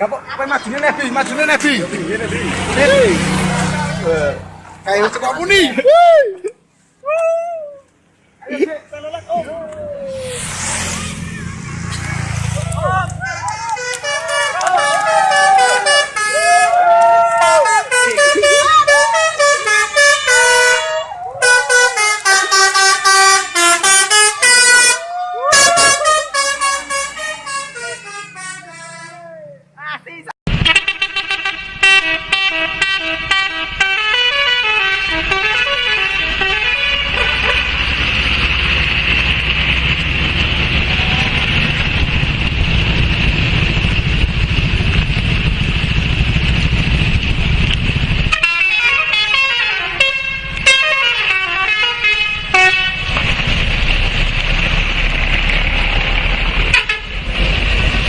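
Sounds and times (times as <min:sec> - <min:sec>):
vehicle engine and traffic noise: 0:00.0 - 0:58.0
musical air horn tune: 0:17.5 - 0:29.2, 0:30.6 - 0:37.6, 0:48.3 - 0:53.0.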